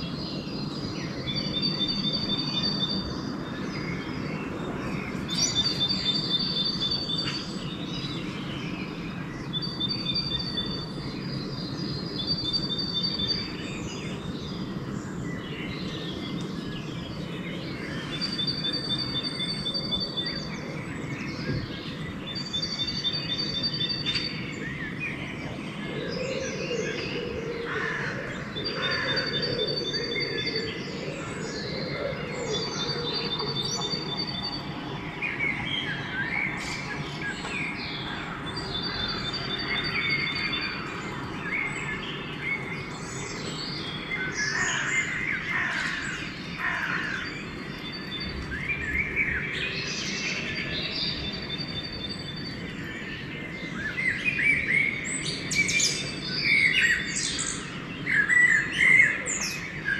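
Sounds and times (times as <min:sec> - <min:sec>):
songbirds singing and calling: 0:00.0 - 0:59.9.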